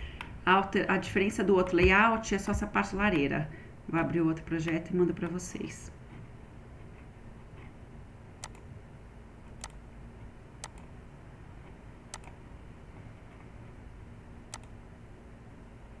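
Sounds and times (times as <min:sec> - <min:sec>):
low room hum: 0:00.0 - 0:16.0
computer mouse double-clicks: 0:08.4 - 0:08.7, 0:10.6 - 0:10.9, 0:12.1 - 0:12.4, 0:14.5 - 0:14.8.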